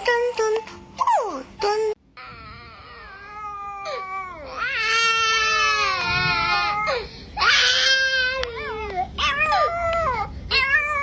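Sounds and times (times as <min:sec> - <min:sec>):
wailing cry: 0:02.2 - 0:11.0.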